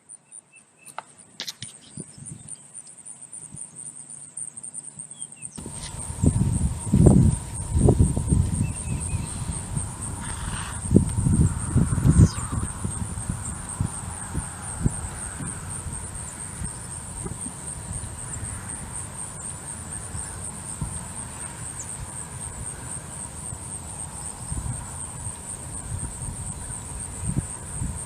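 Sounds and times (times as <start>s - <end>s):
wind rumbling on microphone: 1.8s - 2.5s, 5.6s - 28.0s
high-pitched insect chirring: 3.5s - 20.4s.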